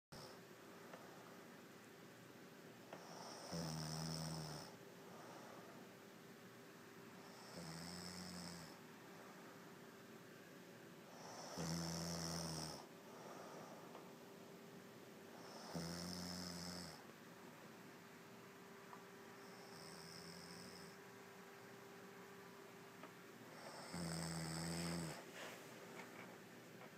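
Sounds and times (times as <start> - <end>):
woman snoring: 0.2 - 0.4, 2.9 - 4.8, 7.2 - 8.8, 11.1 - 12.9, 15.4 - 17.0, 19.4 - 21.0, 23.5 - 25.3.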